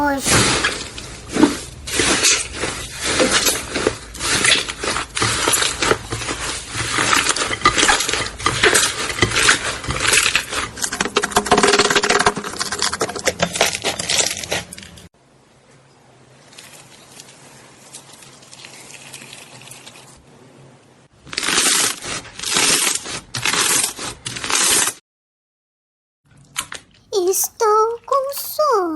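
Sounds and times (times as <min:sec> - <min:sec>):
slime crackling and popping: 0:21.3 - 0:24.8.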